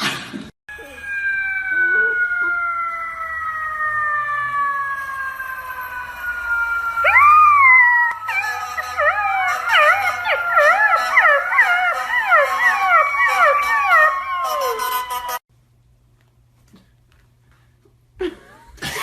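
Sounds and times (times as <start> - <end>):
dogs howling: 0.8 - 15.4.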